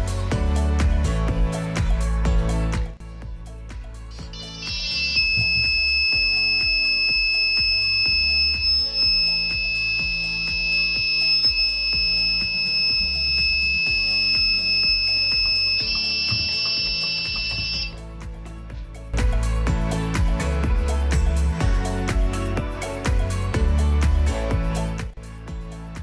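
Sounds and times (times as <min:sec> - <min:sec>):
piezo buzzer beeping: 0:04.4 - 0:18.0.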